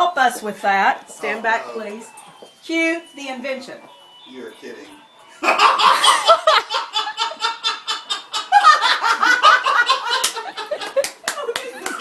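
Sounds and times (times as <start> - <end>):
people laughing loudly: 5.3 - 12.0.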